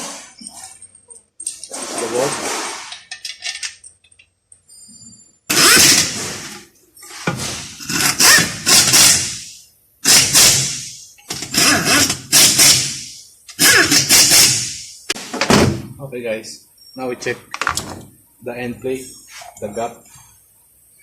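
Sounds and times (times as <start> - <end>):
power wrench running: 5.5 - 6.6, 7.6 - 14.8.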